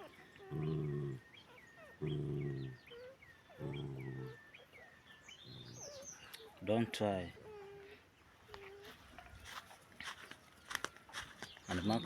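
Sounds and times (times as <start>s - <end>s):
dog growling: 0.0s - 4.5s.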